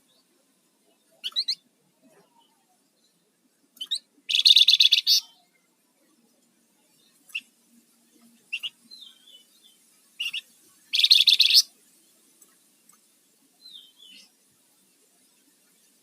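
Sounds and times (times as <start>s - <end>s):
songbird chirps and whistles: 1.1s - 1.6s, 3.8s - 5.6s, 8.5s - 11.7s, 13.6s - 14.3s
bird harsh chattering: 3.8s - 5.3s, 10.2s - 11.7s.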